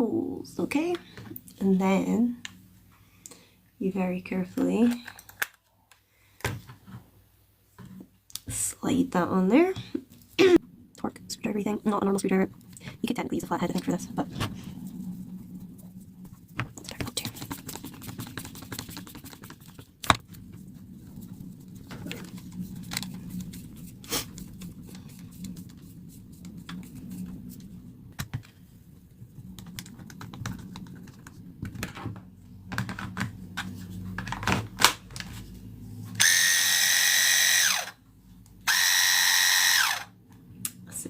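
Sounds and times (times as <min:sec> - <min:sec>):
cordless clipper buzzing: 0:36.2 - 0:38.0, 0:38.7 - 0:40.1.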